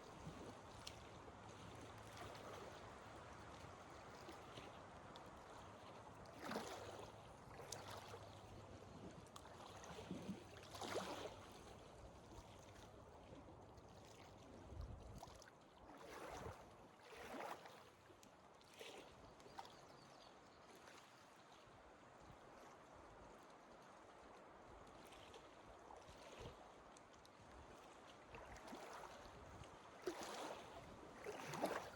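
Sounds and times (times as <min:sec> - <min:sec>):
faint wash of water: 0:00.0 - 0:19.9, 0:20.6 - 0:31.9
soft splashes: 0:05.4 - 0:19.8, 0:24.9 - 0:31.9.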